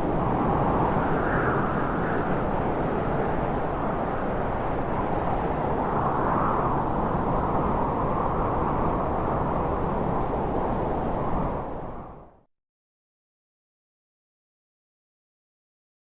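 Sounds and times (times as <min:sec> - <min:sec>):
rushing wind: 0:00.0 - 0:12.4.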